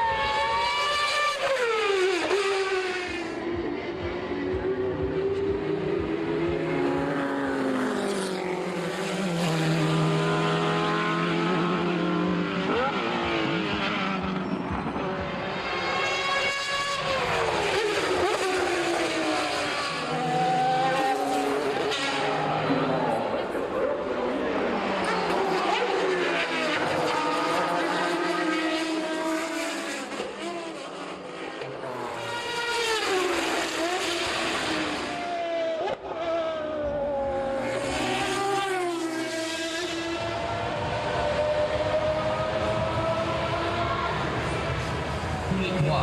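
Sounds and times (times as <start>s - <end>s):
racing car engines passing: 0.0s - 46.0s.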